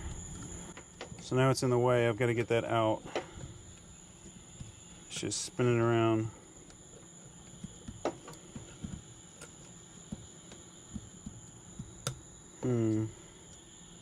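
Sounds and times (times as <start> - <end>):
faint high whine: 0.0 - 14.0
person humming: 12.6 - 13.2.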